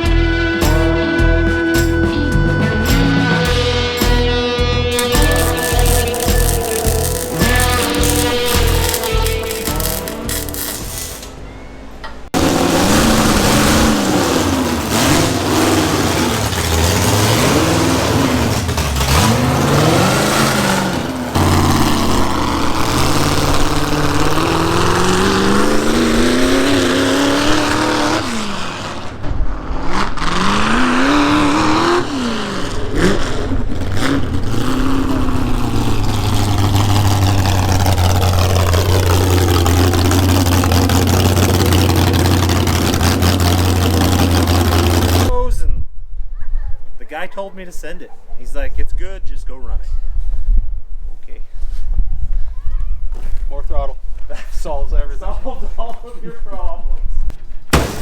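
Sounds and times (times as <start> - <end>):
car engine revving: 0.0 - 45.3.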